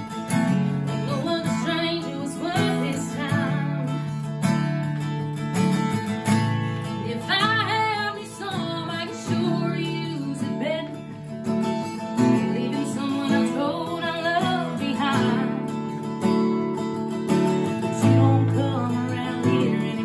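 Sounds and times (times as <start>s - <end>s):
strummed acoustic guitar: 0.0s - 20.0s
person singing: 12.2s - 15.6s, 18.0s - 20.0s.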